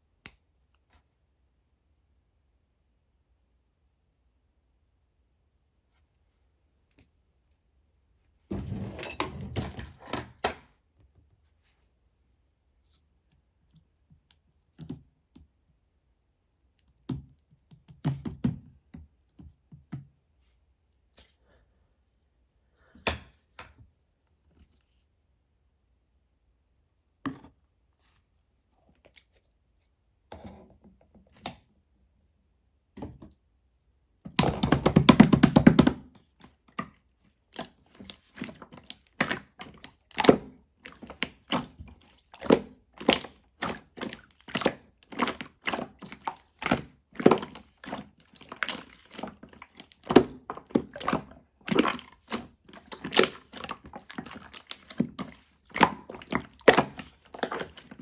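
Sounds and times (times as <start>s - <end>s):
slime clicking and popping: 34.3s - 36.0s.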